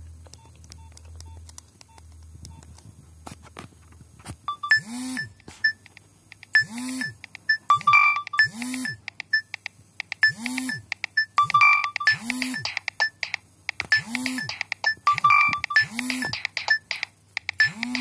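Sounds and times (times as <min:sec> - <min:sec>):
electronic ringtone swooping tone: 0:04.5 - 0:05.3, 0:06.6 - 0:09.0, 0:11.4 - 0:13.3, 0:13.9 - 0:18.0
short high beeps: 0:13.9 - 0:17.0.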